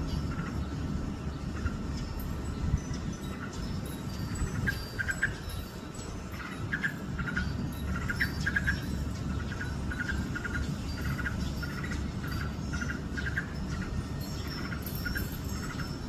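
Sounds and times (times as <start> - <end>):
birds calling: 0.0 - 16.0.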